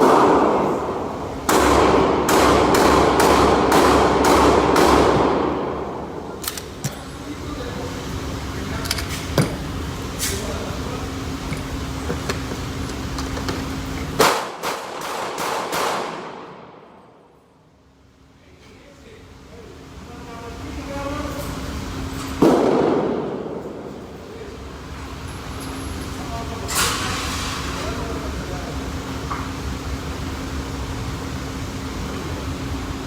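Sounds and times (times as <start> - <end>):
gunshots echoing: 0.0 - 0.8, 1.5 - 6.0, 14.2 - 16.8, 22.4 - 23.6.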